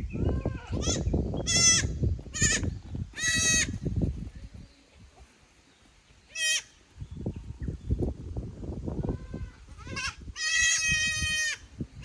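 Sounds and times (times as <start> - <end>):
young goats bleating: 0.2 - 3.9, 6.3 - 6.8, 9.0 - 12.0.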